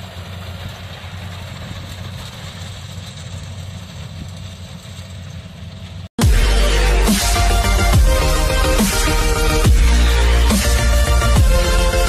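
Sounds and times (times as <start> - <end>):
diesel engine running: 0.0 - 12.0
electronic dance music: 6.2 - 12.0.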